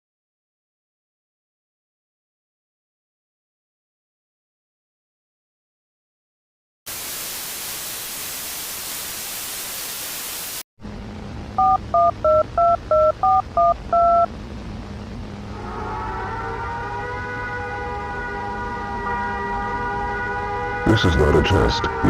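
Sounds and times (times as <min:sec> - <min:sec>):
loud static hiss: 0:06.9 - 0:16.9
steady low hum: 0:10.8 - 0:20.0
touch-tone beeps: 0:11.6 - 0:14.3
siren rising in pitch: 0:15.5 - 0:22.0.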